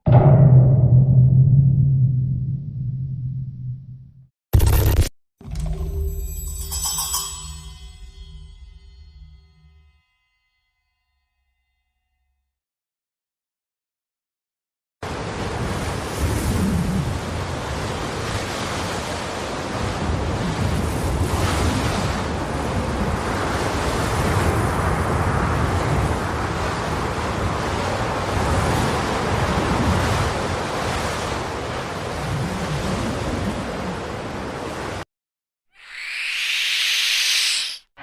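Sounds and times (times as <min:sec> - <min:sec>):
low rumble: 0:00.0 - 0:04.3
rushing noise: 0:35.8 - 0:37.9.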